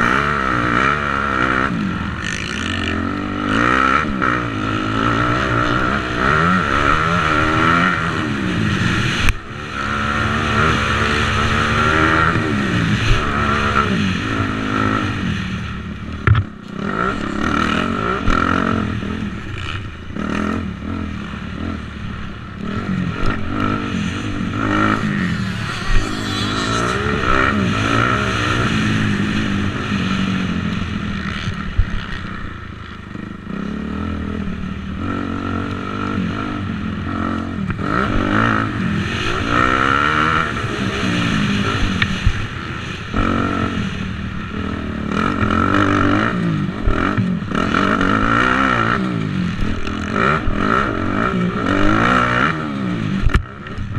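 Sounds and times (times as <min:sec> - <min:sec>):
motocross bike engine revving: 0:22.6 - 0:32.2.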